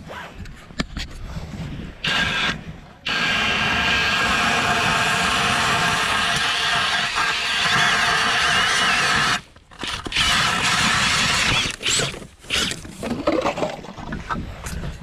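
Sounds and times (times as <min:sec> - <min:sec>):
power ice auger drilling: 0:02.0 - 0:13.7.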